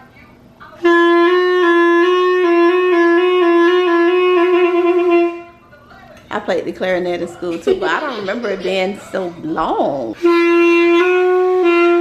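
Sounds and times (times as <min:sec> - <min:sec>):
clarinet long held note: 0:00.8 - 0:05.6, 0:10.2 - 0:12.0.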